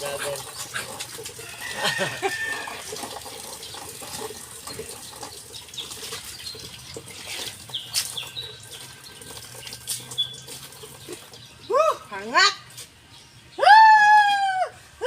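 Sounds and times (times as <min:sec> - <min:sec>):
water splashing and sloshing: 0:00.0 - 0:11.6.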